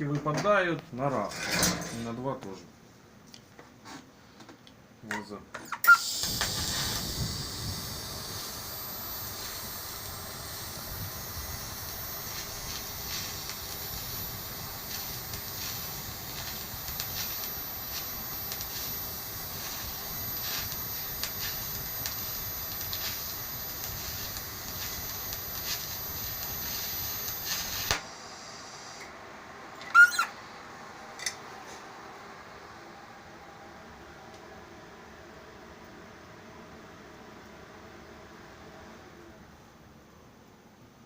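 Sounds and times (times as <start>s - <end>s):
short high squeak: 5.6s - 7.0s, 29.8s - 30.4s
welding arc hissing: 5.8s - 29.1s.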